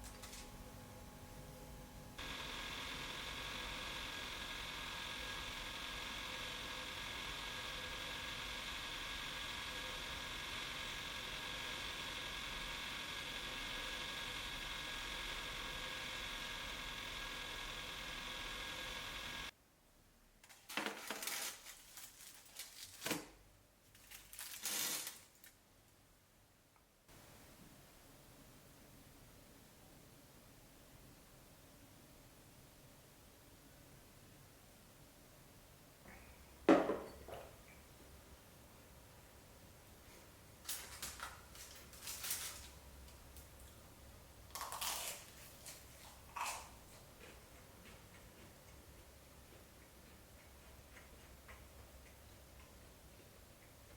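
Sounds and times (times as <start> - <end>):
faint steady hum: 0.0 - 20.5, 25.6 - 53.9
kitchen rustling and knocking: 36.7 - 37.6.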